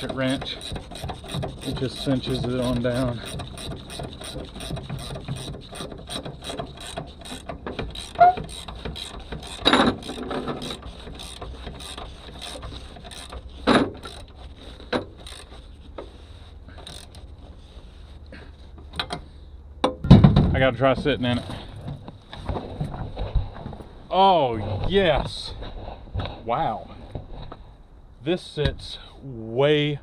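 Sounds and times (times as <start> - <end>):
ratchet wrench clicking: 0.0 - 15.8, 16.7 - 17.3.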